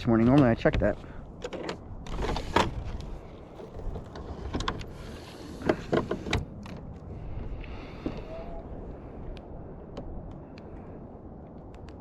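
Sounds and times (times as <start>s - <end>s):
knocks and clicks on boat: 3.6s - 6.8s.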